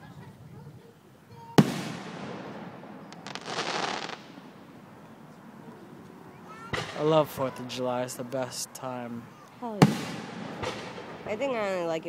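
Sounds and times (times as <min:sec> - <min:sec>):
firework bang: 0:01.6 - 0:04.9, 0:09.8 - 0:11.3
firework burst hissing: 0:03.0 - 0:04.5.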